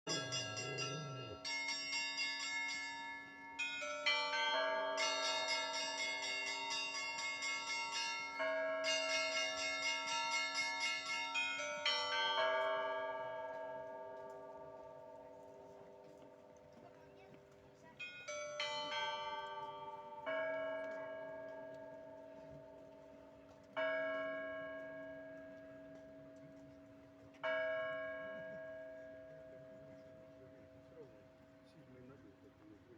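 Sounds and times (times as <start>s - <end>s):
small high bells chiming: 0.1s - 14.1s, 17.8s - 21.9s
low church bells: 0.1s - 32.9s.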